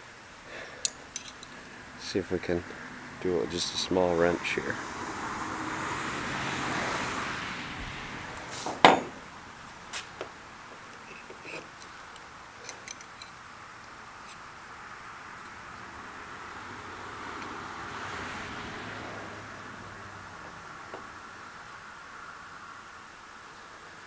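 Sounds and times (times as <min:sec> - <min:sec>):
light metal clinks: 0:00.7 - 0:01.7, 0:10.9 - 0:14.5.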